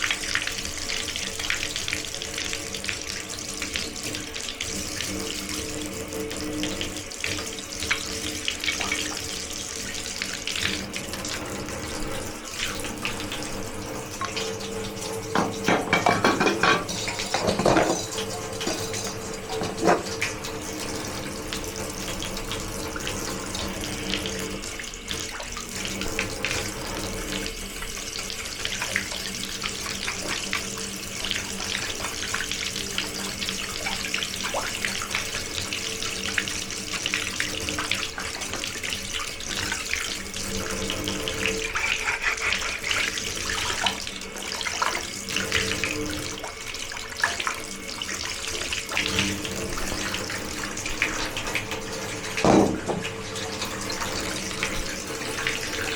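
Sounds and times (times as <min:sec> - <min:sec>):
water running from a tap: 0:00.0 - 0:55.9.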